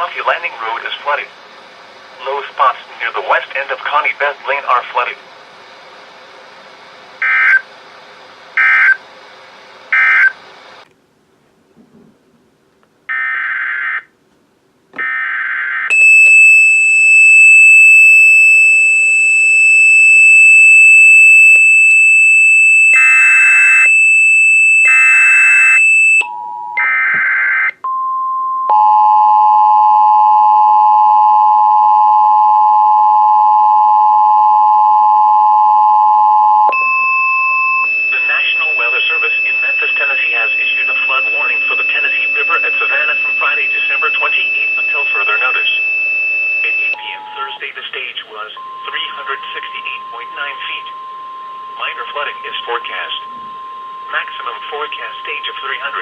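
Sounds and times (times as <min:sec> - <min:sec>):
loud steady alarm tone: 0:07.2 - 0:07.7, 0:08.5 - 0:09.0, 0:09.9 - 0:10.4, 0:15.0 - 0:27.8, 0:28.7 - 0:47.7, 0:48.6 - 0:56.0
long steady high beep: 0:15.9 - 0:26.8, 0:27.8 - 0:47.7, 0:48.5 - 0:56.0.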